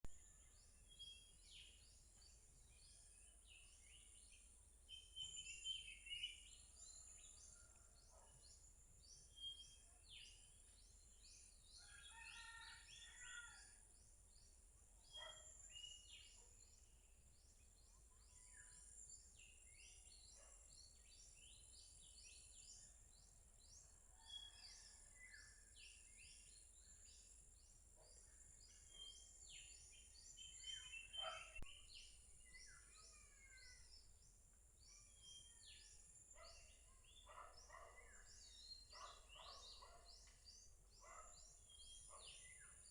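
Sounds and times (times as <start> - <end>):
birds chirping: 30.0 - 33.9, 34.9 - 42.9.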